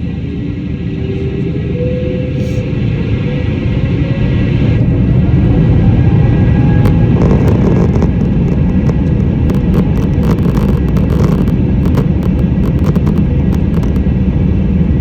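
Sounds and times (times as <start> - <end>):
jet engines and wheels rumbling: 0.0 - 15.0
sharp clicks and rattles: 5.5 - 14.2.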